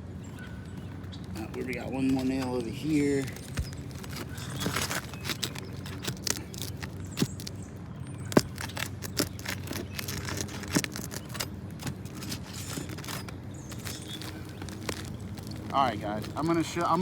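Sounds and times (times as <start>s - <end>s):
metal tool scraping shingles: 8.3s - 17.0s.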